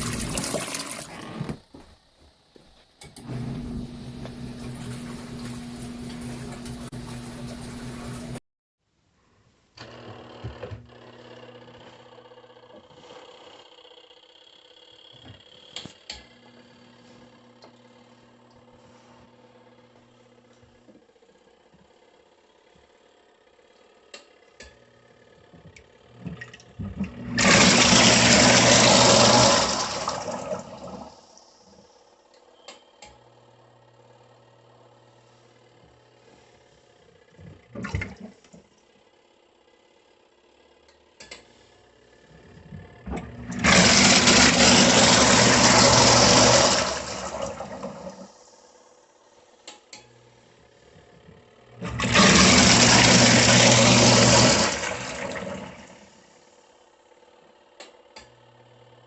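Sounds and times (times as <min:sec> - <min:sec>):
washing machine churning water: 0:00.0 - 0:01.9, 0:03.0 - 0:08.4, 0:25.3 - 0:31.7, 0:36.3 - 0:38.6, 0:42.3 - 0:48.7, 0:50.8 - 0:56.3
washing machine motor hum: 0:00.0 - 0:08.4, 0:13.8 - 0:49.1, 0:50.2 - 0:56.4.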